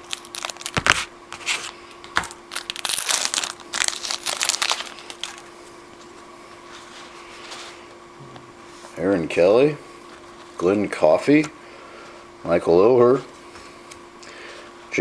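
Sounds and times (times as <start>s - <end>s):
card pack wrapper crinkling: 0.0s - 5.5s.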